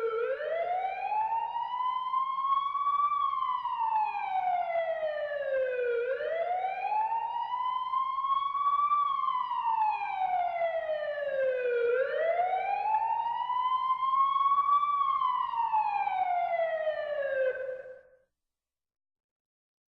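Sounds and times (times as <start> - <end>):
police siren wailing: 0.0 - 18.0.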